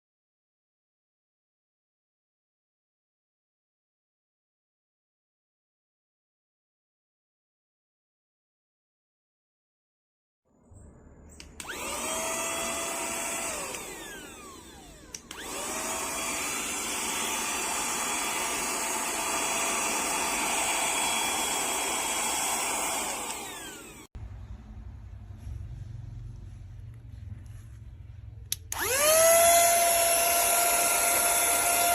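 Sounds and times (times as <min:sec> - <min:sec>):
handheld vacuum cleaner motor: 0:11.5 - 0:24.1, 0:28.5 - 0:31.9
low hum: 0:23.4 - 0:30.4.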